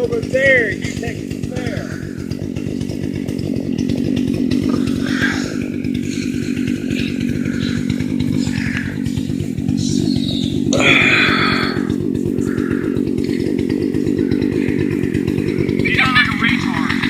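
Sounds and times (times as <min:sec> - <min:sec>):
chainsaw running: 0:00.0 - 0:17.0.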